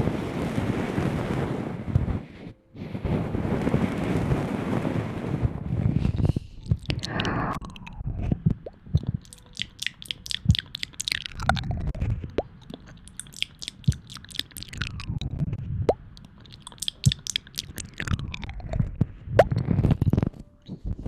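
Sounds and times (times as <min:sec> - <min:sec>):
wet mouth clicks and pops: 0:06.6 - 0:20.3.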